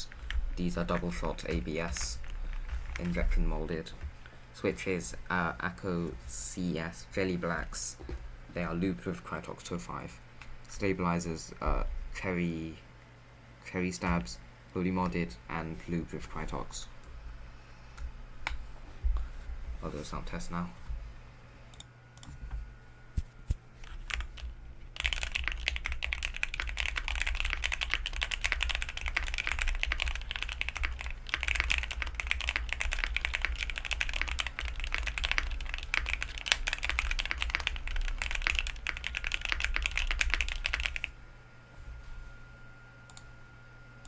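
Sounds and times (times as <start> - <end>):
mechanical keyboard typing: 23.8 - 41.1.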